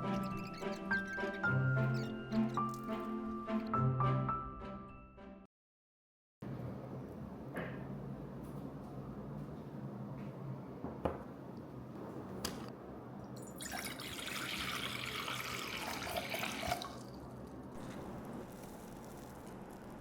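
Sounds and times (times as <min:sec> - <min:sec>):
water pouring into container: 0:13.4 - 0:20.0.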